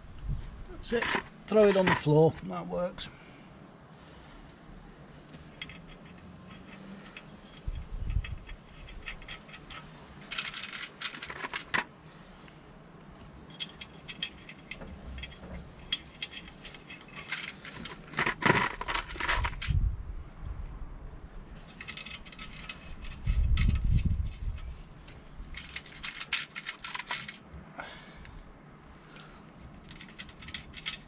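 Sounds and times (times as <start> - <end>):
metal parts and tools clinking: 0.0 - 2.5, 5.3 - 11.9, 13.4 - 19.8, 21.6 - 27.6, 29.6 - 31.0.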